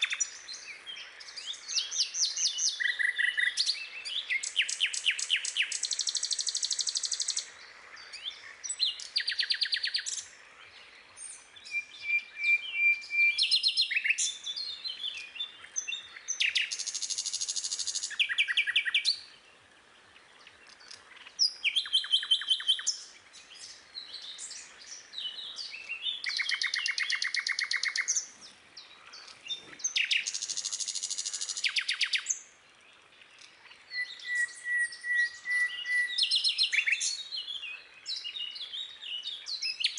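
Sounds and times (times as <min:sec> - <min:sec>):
songbird trilling: 0:00.0 - 0:07.5, 0:11.5 - 0:19.4, 0:20.4 - 0:32.4, 0:33.4 - 0:39.9.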